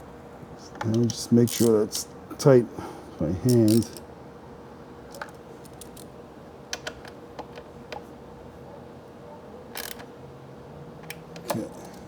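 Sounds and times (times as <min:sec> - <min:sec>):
faint steady hum: 0:00.0 - 0:12.0
hand tool tapping metal parts: 0:00.8 - 0:01.8, 0:03.5 - 0:04.0.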